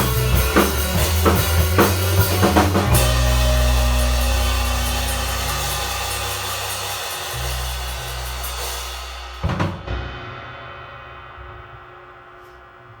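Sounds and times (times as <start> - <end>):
band holding chord: 0.0 - 10.2
cymbal wash: 0.0 - 13.0
drum kit hits: 0.0 - 13.0.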